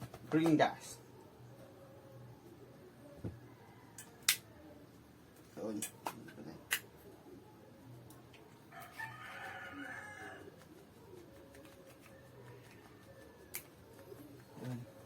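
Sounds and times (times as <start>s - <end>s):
rooster crowing: 8.7s - 10.6s.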